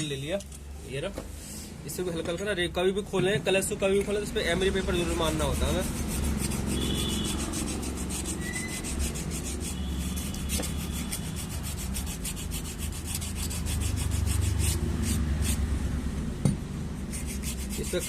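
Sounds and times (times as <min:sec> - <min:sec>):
sandpaper rubbing back and forth: 0:04.8 - 0:15.6, 0:17.1 - 0:18.0.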